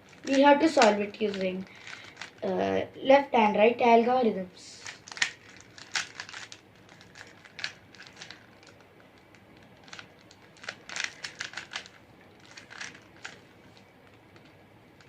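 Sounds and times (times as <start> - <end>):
plastic puzzle cube clicking: 4.8 - 8.7, 9.8 - 13.4.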